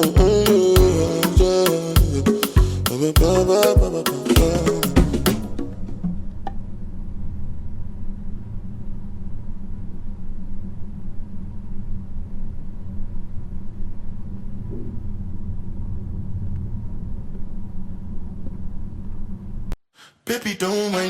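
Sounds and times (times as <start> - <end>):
music: 0.0 - 6.3.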